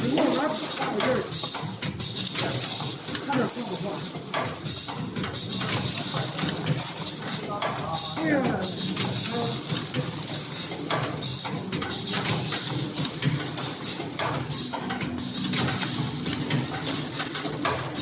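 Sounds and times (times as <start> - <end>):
machine running: 10.9 - 18.0.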